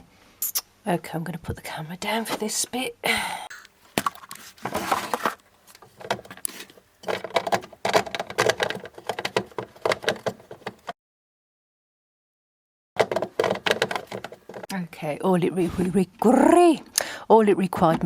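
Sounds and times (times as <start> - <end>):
plastic drawer knocking and rattling: 5.9 - 6.4, 7.0 - 10.9, 13.0 - 14.7.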